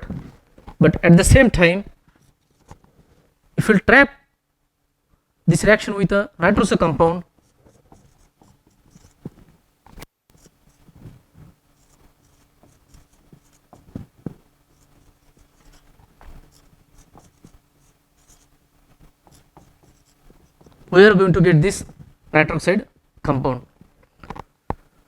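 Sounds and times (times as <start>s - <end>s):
pen scratching handwriting: 7.4s - 11.0s, 11.7s - 20.9s.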